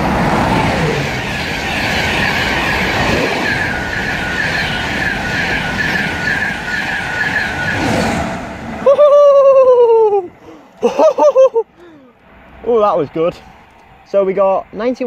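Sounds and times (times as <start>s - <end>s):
rhythmic train clatter: 0.0s - 8.8s, 10.2s - 15.0s
train wheels rushing on rail: 0.0s - 9.1s.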